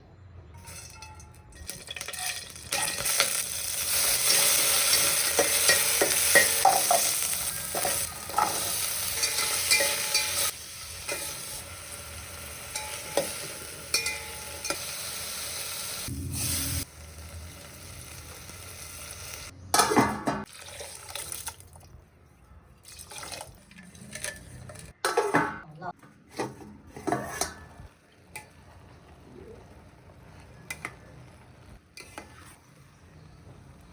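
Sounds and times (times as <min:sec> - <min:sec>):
food sizzling in a pan: 0:01.6 - 0:19.6
utensil clinking against pan: 0:09.2 - 0:10.5, 0:12.7 - 0:14.8.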